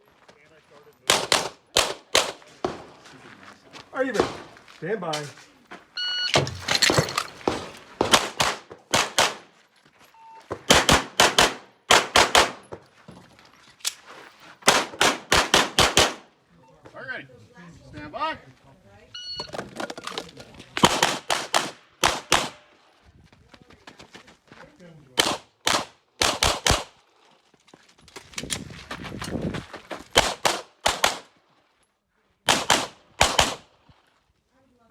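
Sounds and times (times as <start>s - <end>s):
pistol shots: 1.1s - 2.9s, 7.4s - 9.5s, 10.7s - 12.6s, 14.7s - 16.3s, 20.8s - 22.6s, 25.2s - 26.9s, 30.2s - 31.3s, 32.5s - 33.7s
start beep: 6.0s - 6.4s, 19.2s - 19.6s.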